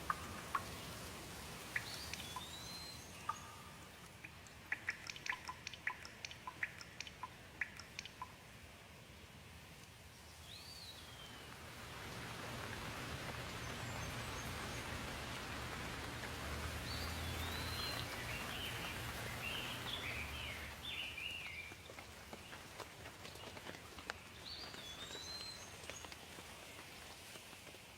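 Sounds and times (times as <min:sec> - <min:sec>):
steady rain hiss: 0:00.0 - 0:27.9
birds chirping and whistling: 0:01.8 - 0:03.5, 0:16.9 - 0:21.7.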